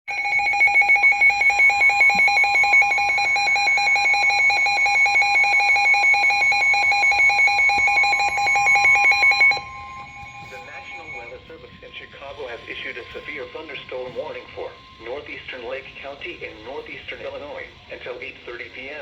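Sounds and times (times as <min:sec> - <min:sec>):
pulsing electronic alarm tone: 0:00.1 - 0:11.4
steady warning tone: 0:00.1 - 0:19.0.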